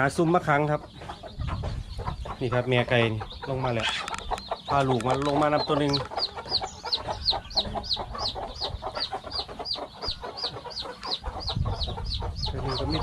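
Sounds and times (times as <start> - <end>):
chick peeping: 0.0 - 13.0
chickens clucking: 0.0 - 13.0.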